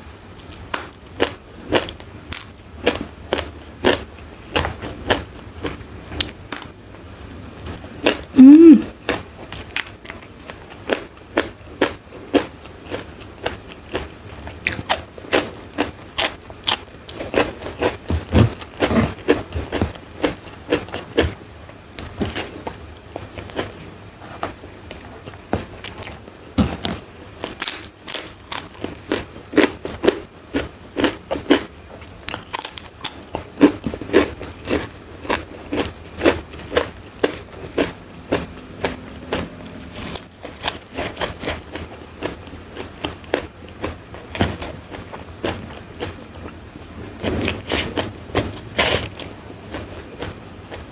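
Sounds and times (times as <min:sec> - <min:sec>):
wet mouth sounds: 0:08.4 - 0:08.9
crisp food crunching: 0:24.9 - 0:50.9.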